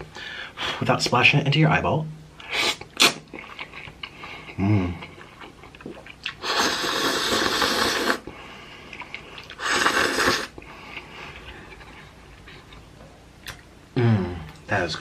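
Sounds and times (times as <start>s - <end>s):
person slurping noodles: 2.4s - 3.6s, 4.5s - 8.3s, 9.4s - 10.6s
person humming: 4.6s - 5.1s, 14.0s - 14.6s.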